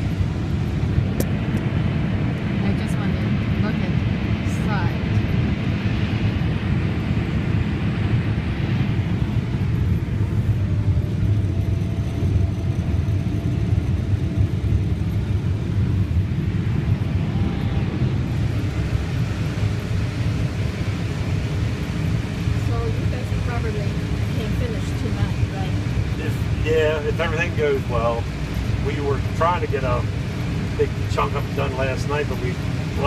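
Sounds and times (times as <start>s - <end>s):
combine harvester running: 0.0s - 33.0s.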